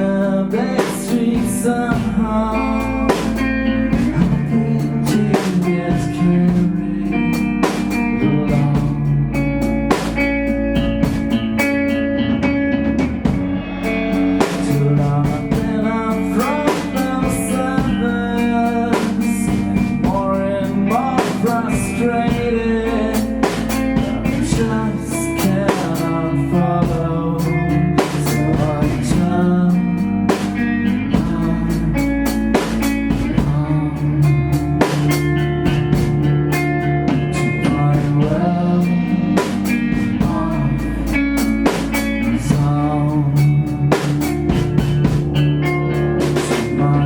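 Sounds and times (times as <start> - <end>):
drum kit steady beat: 0.0 - 47.0
electric guitar notes bending: 0.0 - 47.0.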